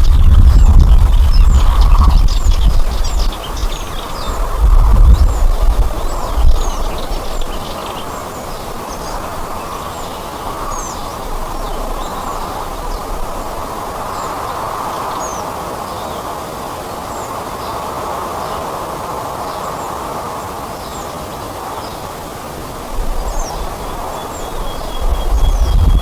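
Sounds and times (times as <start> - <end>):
low rumble: 0.0 - 7.1, 25.0 - 26.0
small birds chirping: 0.0 - 18.8, 19.4 - 26.0
background hiss: 0.0 - 26.0.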